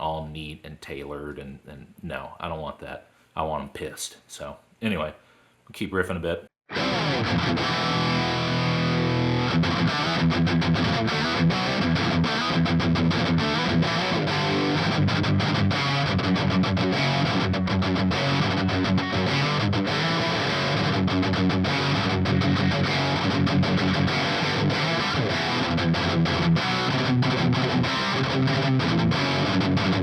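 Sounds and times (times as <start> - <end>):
distorted electric guitar riffing: 6.7 - 30.0.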